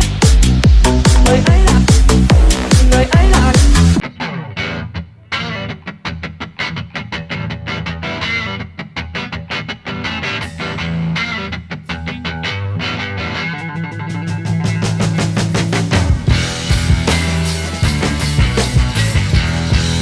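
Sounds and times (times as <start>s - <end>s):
steady bass: 0.0s - 4.0s, 13.6s - 20.0s
plucked guitar notes: 0.7s - 20.0s.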